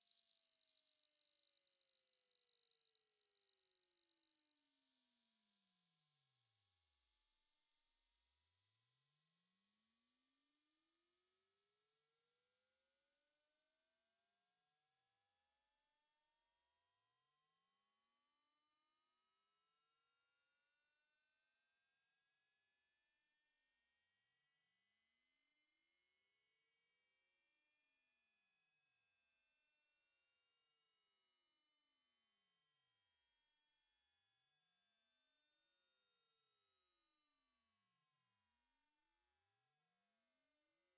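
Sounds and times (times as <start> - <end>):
rising sine tone sweep: 13.0 - 40.9.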